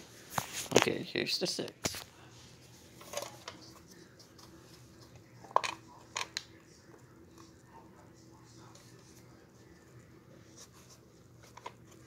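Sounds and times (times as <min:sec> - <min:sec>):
plastic toy handling noise: 0:02.8 - 0:06.5, 0:10.5 - 0:12.0.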